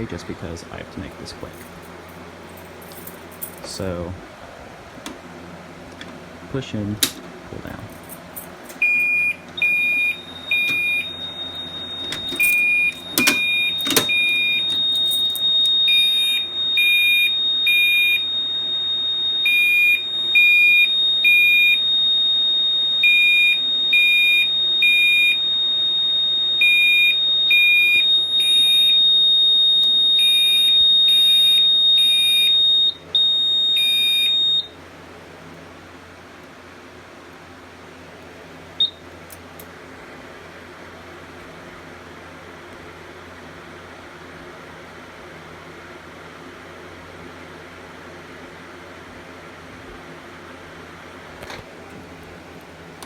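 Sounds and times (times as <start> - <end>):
alarm horn beeps: 8.6 - 34.7.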